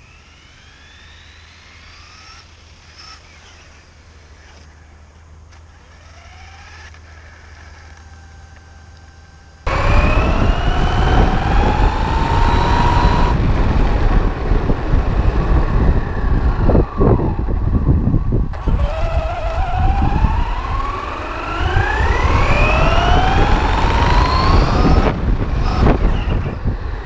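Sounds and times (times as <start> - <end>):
electric motor whining: 0.0 - 27.0
loud rough rumble: 9.5 - 27.0.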